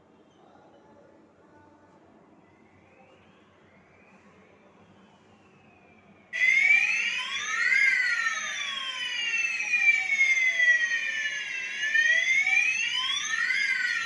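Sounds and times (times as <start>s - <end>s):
fire alarm wailing: 6.4s - 14.0s.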